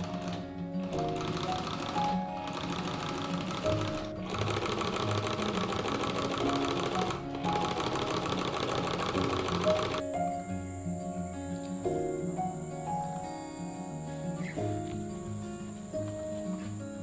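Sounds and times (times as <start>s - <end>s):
sewing machine stitching: 0.0s - 10.0s
background music: 0.0s - 17.0s.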